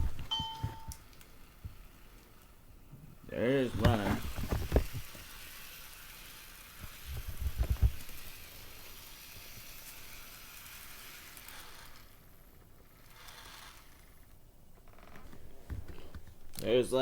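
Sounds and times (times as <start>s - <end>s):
model train running hiss: 1.3s - 14.3s.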